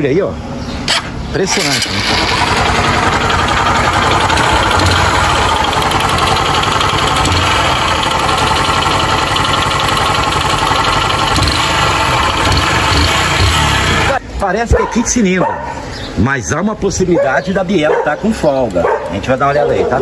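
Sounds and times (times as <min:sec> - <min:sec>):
motorcycle engine running: 0:01.6 - 0:14.2.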